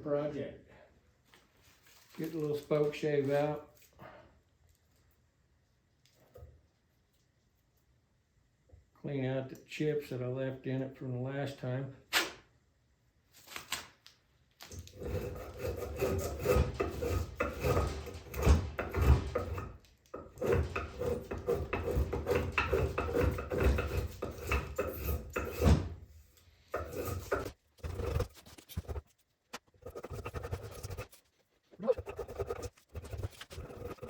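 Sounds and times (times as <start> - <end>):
spokeshave scraping wood: 14.8 - 34.0.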